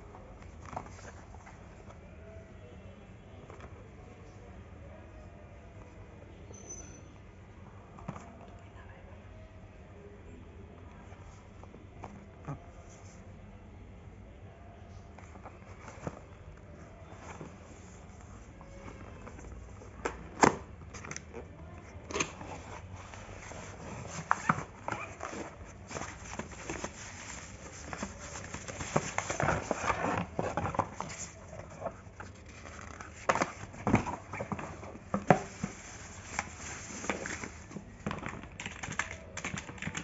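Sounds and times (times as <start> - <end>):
keyboard clicks and knocks: 38.1 - 40.0.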